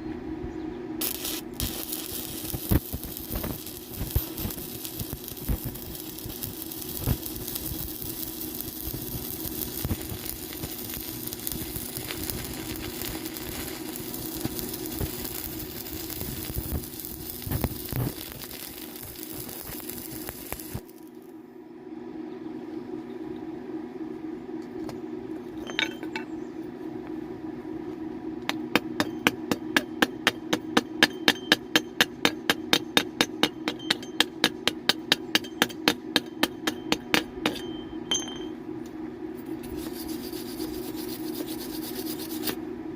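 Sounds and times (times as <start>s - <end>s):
low hum: 0.0s - 31.7s
welding arc crackling: 1.0s - 21.3s, 39.7s - 42.6s.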